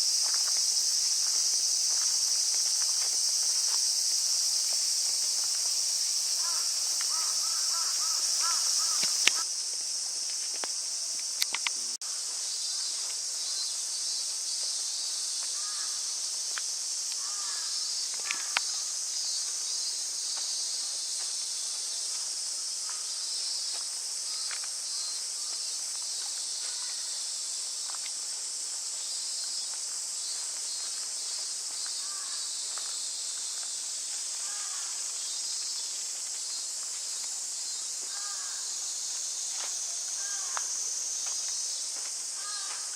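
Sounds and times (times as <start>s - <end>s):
high-pitched insect chorus: 0.0s - 42.9s
faint bird calls: 6.4s - 9.5s
sharp clicks: 11.3s - 11.8s.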